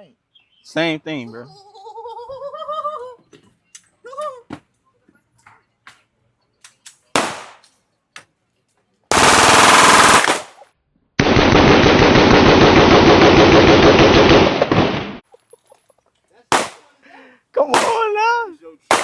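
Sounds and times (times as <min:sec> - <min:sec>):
rapid gunfire: 0:07.2 - 0:07.6, 0:09.1 - 0:10.6, 0:11.2 - 0:15.1, 0:16.5 - 0:16.8.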